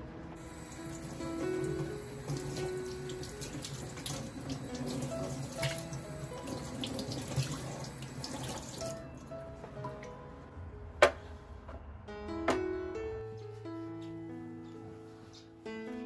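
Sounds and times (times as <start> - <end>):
soft background music: 0.0 - 16.0
tap water running into sink: 0.4 - 9.0.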